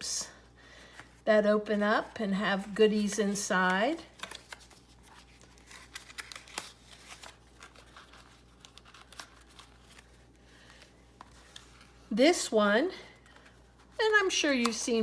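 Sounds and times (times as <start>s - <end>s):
paper envelopes rustling: 1.9s - 12.2s.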